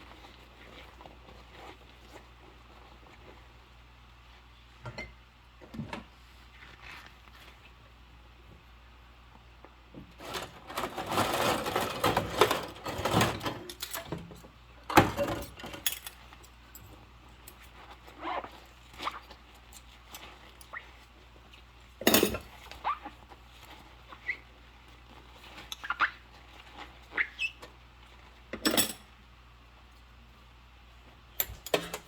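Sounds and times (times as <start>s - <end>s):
dishes scrubbing and clattering: 10.3s - 14.0s.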